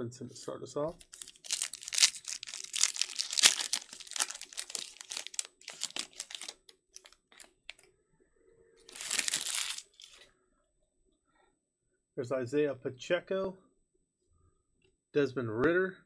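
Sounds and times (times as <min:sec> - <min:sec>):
foil wrapper tearing and crinkling: 0:01.0 - 0:07.8, 0:08.9 - 0:10.2.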